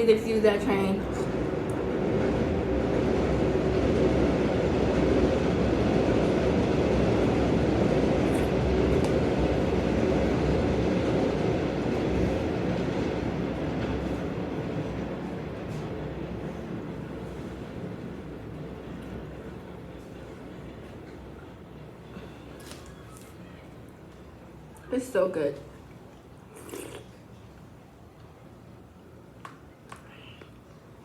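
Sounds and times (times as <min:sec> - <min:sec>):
train passing: 0:00.0 - 0:26.5.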